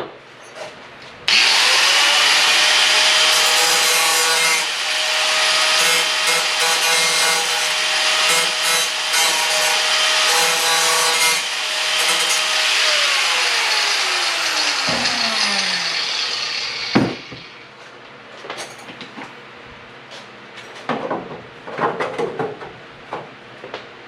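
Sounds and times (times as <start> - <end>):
power tool cutting: 1.3 - 17.6.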